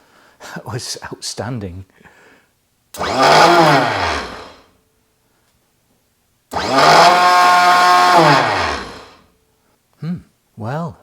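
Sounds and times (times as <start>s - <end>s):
electric starter motor whining: 3.0s - 4.7s, 6.5s - 9.3s.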